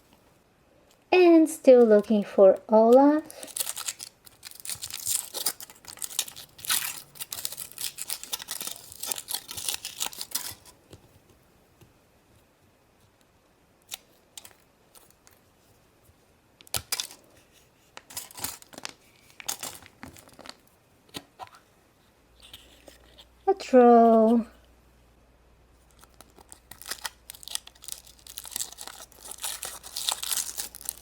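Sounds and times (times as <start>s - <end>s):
foil wrapper tearing and crinkling: 3.3s - 10.8s, 16.7s - 17.2s, 18.0s - 20.6s, 25.9s - 31.0s.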